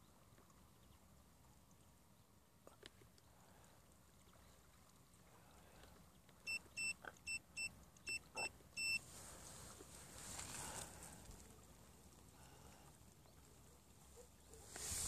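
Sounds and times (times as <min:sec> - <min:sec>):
faint hiss: 0:08.9 - 0:15.0.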